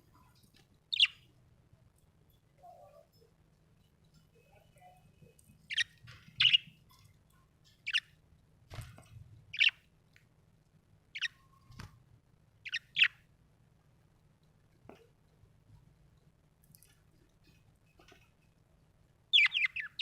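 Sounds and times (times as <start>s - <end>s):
budgie chirping: 0.9s - 1.3s, 5.7s - 6.8s, 7.8s - 8.2s, 9.5s - 9.8s, 11.1s - 11.6s, 12.6s - 13.2s, 19.3s - 20.0s.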